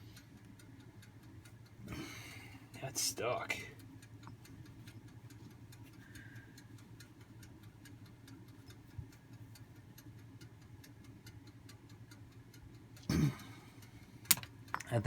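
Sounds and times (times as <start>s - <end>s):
faint even ticking: 0.0s - 15.0s
low steady hum: 0.0s - 15.0s.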